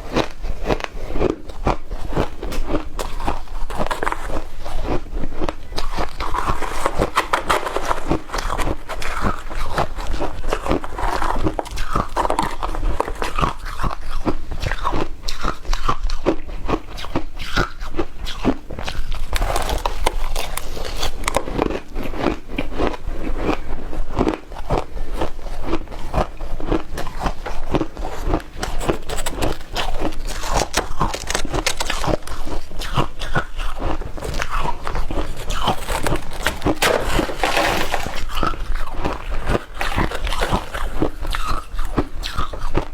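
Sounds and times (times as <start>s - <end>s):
crunching shaved ice: 0.0s - 42.9s.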